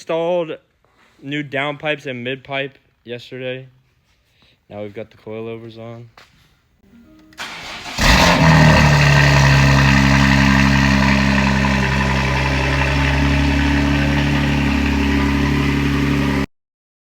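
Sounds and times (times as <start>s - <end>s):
car engine revving and idling: 7.4s - 16.5s.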